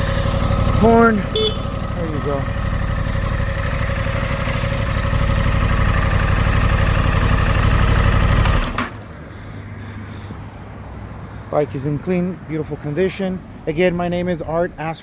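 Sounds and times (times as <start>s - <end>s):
motorcycle engine idling: 0.0s - 9.0s.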